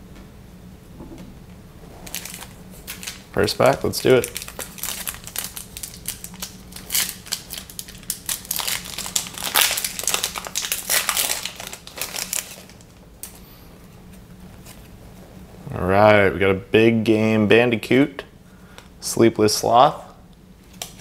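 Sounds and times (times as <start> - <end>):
wrapper tearing and crinkling: 2.0 - 13.4.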